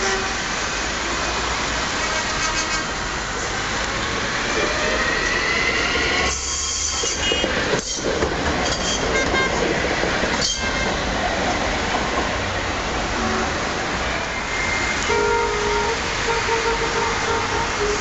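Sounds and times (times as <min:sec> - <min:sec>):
tram rolling rumble: 0:00.0 - 0:18.0
wheels clacking over rail joints: 0:06.7 - 0:12.6.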